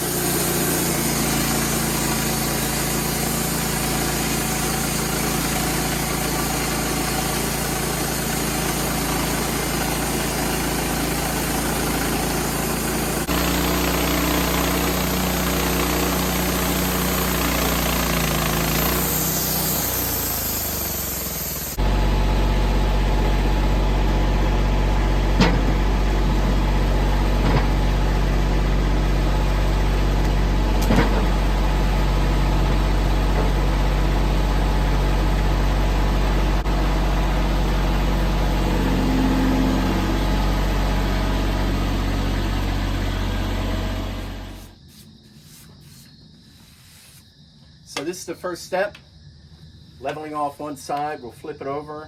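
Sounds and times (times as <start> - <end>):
band blade cutting log: 0.0 - 21.8, 36.7 - 44.8
sawmill engine running: 0.0 - 44.8.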